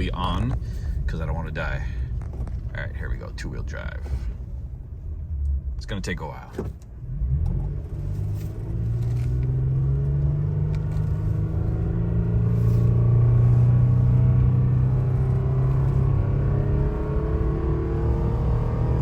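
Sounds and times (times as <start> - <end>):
truck engine accelerating: 7.0 - 19.0.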